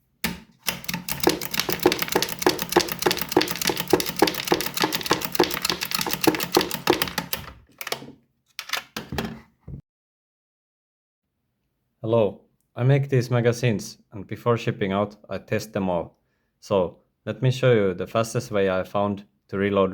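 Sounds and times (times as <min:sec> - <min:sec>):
magazine handling clicks and knocks: 0:01.6 - 0:09.2.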